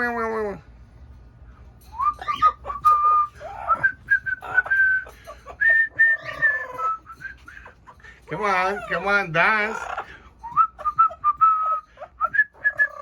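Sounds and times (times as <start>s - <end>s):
whistled notes: 1.9s - 7.6s, 10.4s - 13.0s.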